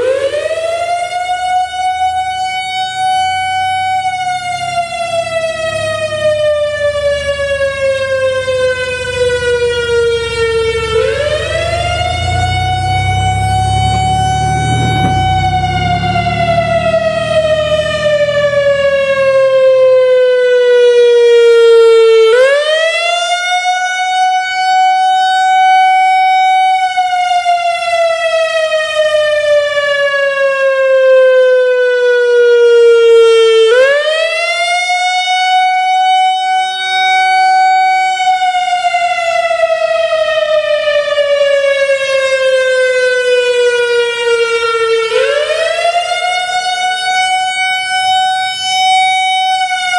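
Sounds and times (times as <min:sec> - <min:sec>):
warning siren wailing: 0:00.0 - 0:49.9.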